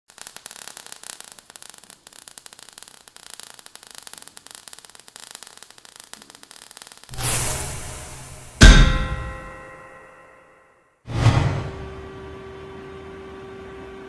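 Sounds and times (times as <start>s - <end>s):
crackling static hiss: 0.1s - 8.6s.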